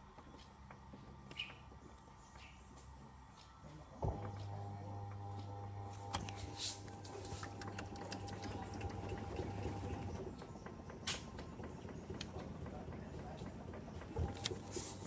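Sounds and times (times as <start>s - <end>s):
washing machine motor hum: 4.0s - 15.0s.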